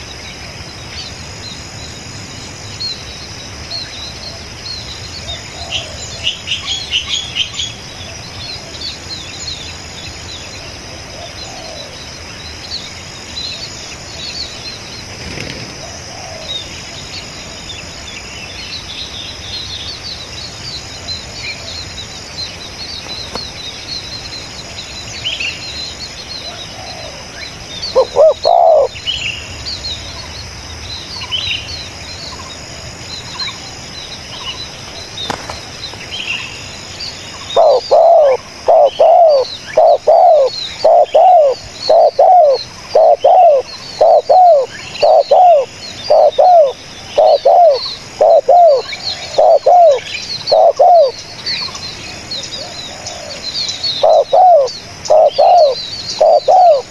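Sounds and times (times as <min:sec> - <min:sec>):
small birds chirping: 0:00.0 - 0:56.9
dove cooing: 0:15.8 - 0:16.6, 0:27.9 - 0:29.0, 0:37.5 - 0:51.2, 0:54.0 - 0:56.9.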